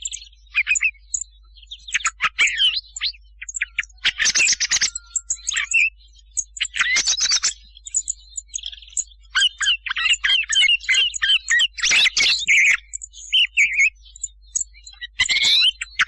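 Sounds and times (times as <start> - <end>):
recorded thrush song: 0.0 - 16.0.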